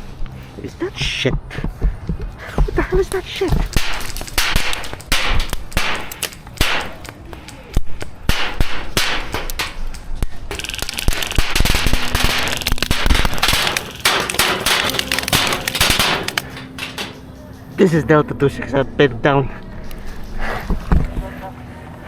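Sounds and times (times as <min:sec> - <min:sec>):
airsoft guns firing: 0:03.8 - 0:07.1, 0:10.5 - 0:17.2.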